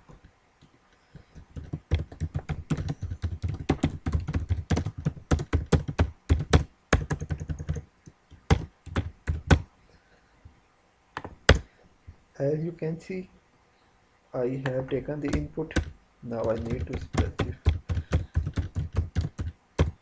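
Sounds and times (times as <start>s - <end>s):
computer keyboard typing: 1.2s - 7.8s, 8.4s - 9.6s, 11.2s - 11.7s, 14.6s - 20.0s.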